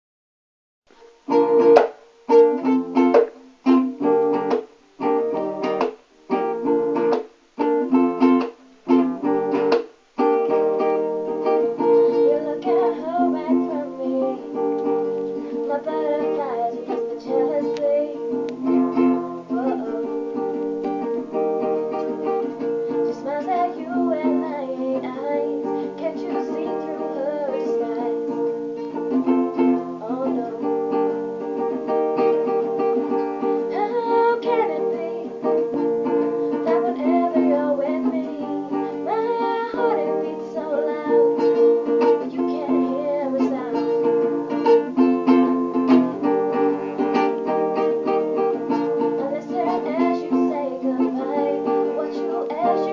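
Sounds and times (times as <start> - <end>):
ukulele chords: 0.9 - 52.9
woman singing: 11.4 - 21.1, 21.7 - 46.6, 48.4 - 52.9.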